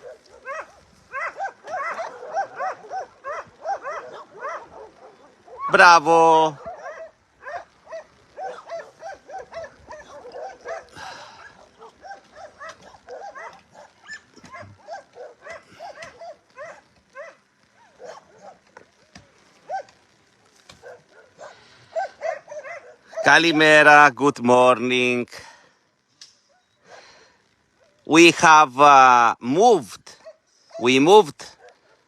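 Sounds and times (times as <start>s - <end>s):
dogs barking and yipping: 0.0s - 23.8s, 30.2s - 32.0s.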